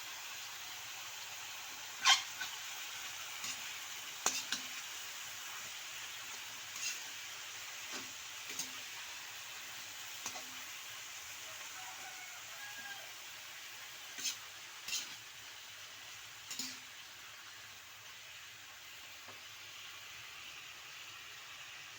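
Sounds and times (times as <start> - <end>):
steady hiss: 0.0 - 21.9
spatula scraping a wok: 2.0 - 10.8, 13.0 - 17.1.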